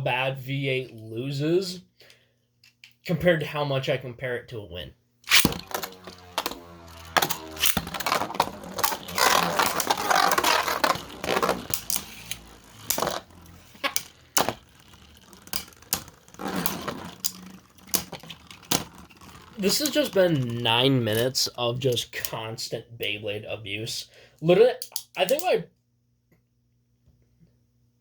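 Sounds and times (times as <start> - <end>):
spinning tops clacking together: 5.3 - 20.4
spinning tops whirring: 5.3 - 21.5
spinning tops scraping: 5.3 - 22.0.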